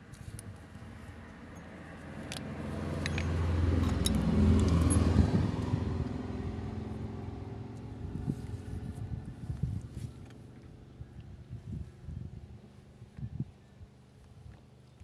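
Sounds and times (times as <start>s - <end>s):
vehicle engine passing: 1.9s - 10.1s.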